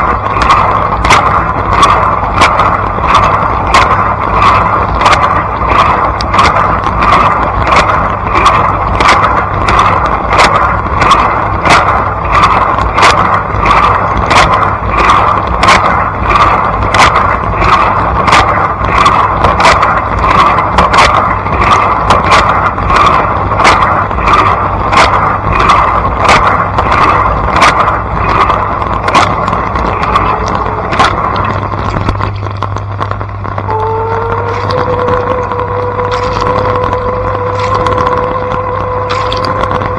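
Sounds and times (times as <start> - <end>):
wash pump low hum: 0.0 - 39.9
water jets slapping: 0.0 - 39.9
water spraying in dishwasher: 33.8 - 39.9.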